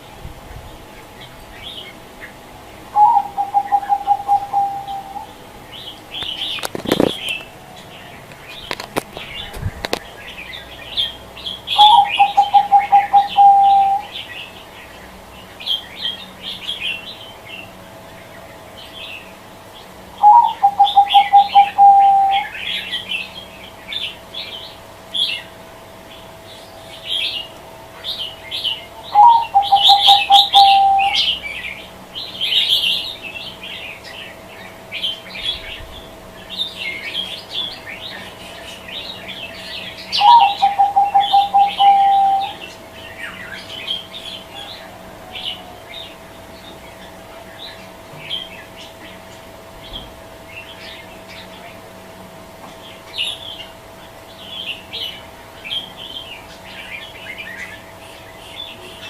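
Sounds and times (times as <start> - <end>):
small birds chirping: 0.0 - 59.0
dove cooing: 2.9 - 10.1, 11.0 - 14.3, 20.2 - 23.3, 27.0 - 31.9, 35.4 - 46.2.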